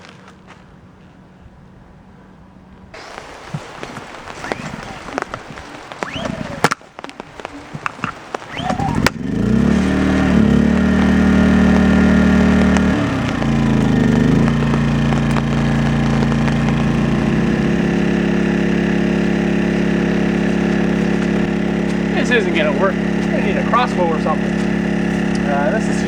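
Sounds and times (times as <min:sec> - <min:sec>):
engine starting and revving: 0:08.5 - 0:26.0.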